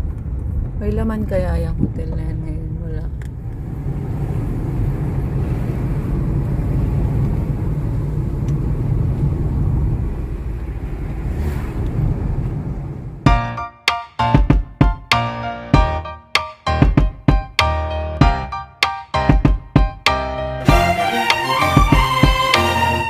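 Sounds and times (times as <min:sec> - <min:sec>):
car road rumble from inside: 0:00.0 - 0:13.3
music with percussive hits: 0:13.3 - 0:23.0.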